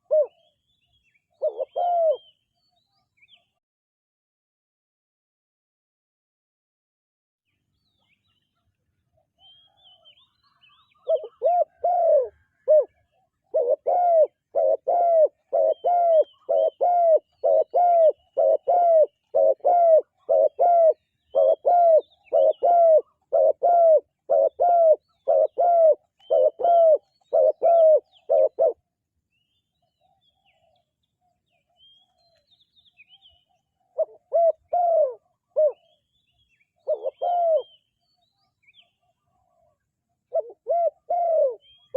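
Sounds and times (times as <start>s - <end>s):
dove cooing: 0.0s - 0.5s, 1.4s - 2.3s, 9.6s - 28.8s, 33.4s - 36.0s, 36.8s - 37.8s, 38.7s - 41.9s
small birds chirping: 7.5s - 41.9s.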